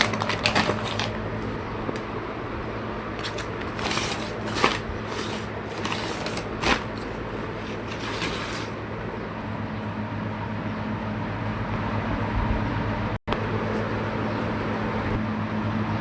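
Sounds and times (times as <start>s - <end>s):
packaging and cloth rustling: 0.0s - 1.6s, 3.0s - 9.2s
steady low hum: 0.0s - 16.0s.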